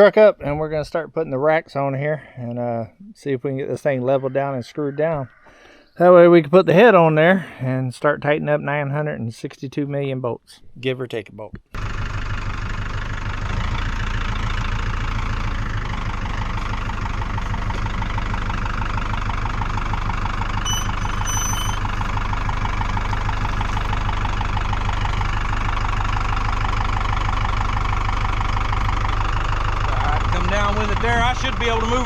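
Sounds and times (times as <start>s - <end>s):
vehicle engine idling: 11.8s - 32.0s.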